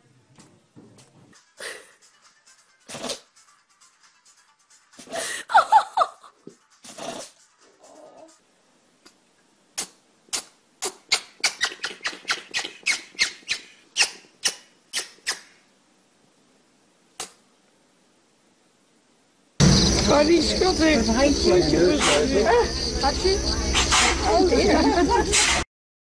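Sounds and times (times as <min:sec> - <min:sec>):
animal sneezing: 0:02.9 - 0:03.3, 0:06.8 - 0:07.4, 0:22.0 - 0:22.4, 0:23.7 - 0:24.3, 0:25.3 - 0:25.6.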